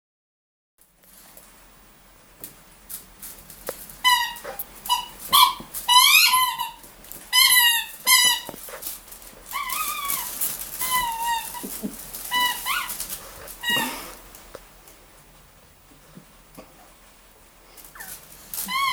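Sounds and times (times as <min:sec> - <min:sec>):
squeaky toy squeaking: 0:04.0 - 0:08.5, 0:09.5 - 0:11.7, 0:12.3 - 0:13.0, 0:18.6 - 0:18.9.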